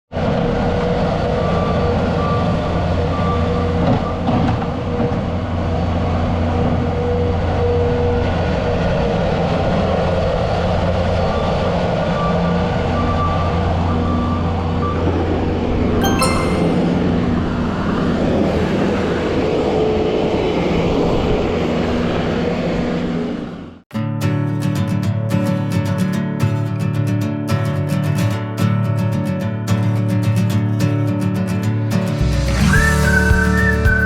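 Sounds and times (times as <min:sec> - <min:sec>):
faint high tone: 0:16.0 - 0:17.5.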